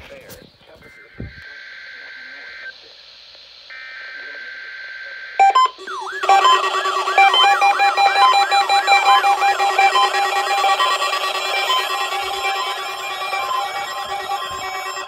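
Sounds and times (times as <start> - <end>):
short beeps: 5.4 - 15.0
siren-like sweeping tone: 5.5 - 15.0.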